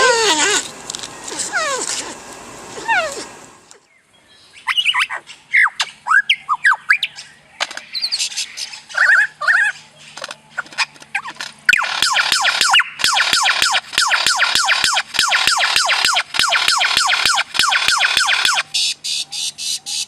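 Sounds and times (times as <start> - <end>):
bird chirping and whistling: 4.5 - 9.8, 11.1 - 20.0.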